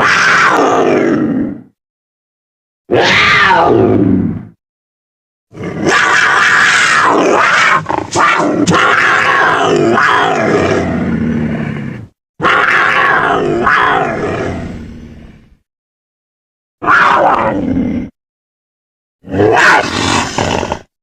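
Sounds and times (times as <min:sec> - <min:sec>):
creature roar: 0:00.0 - 0:01.7, 0:02.9 - 0:04.6, 0:05.5 - 0:15.4, 0:16.8 - 0:18.2, 0:19.2 - 0:21.0.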